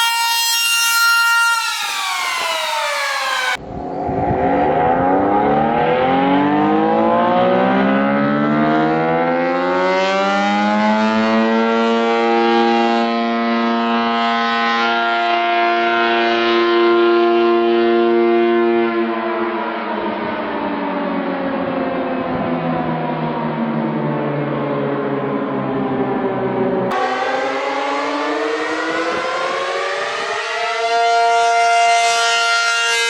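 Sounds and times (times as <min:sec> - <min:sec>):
warning siren winding up: 0:00.0 - 0:03.6, 0:26.9 - 0:33.0.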